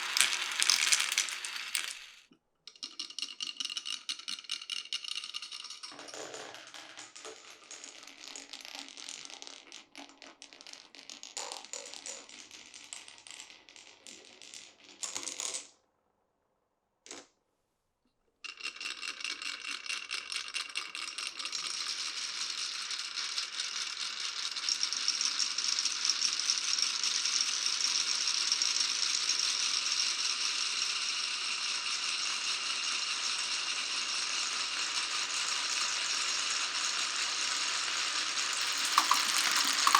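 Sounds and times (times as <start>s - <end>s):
glass marbles rolling on wooden run: 0.0s - 2.2s, 38.5s - 39.9s
rattle of many marbles: 0.0s - 15.4s, 18.5s - 26.2s, 37.9s - 39.9s.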